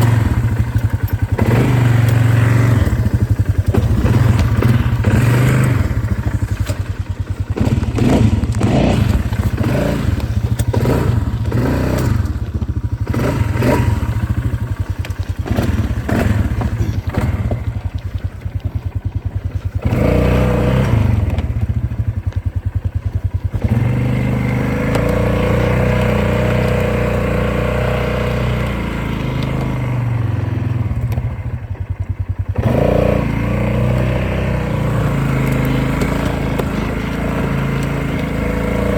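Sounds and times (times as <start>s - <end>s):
vehicle clattering and thudding: 0.0s - 19.1s
off-road vehicle engine revving: 0.0s - 38.9s.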